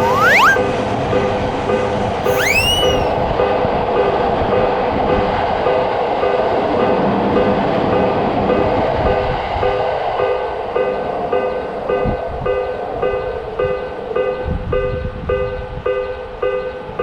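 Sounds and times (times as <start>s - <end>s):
rising whistle-like tone: 0.0s - 0.7s, 2.3s - 3.3s.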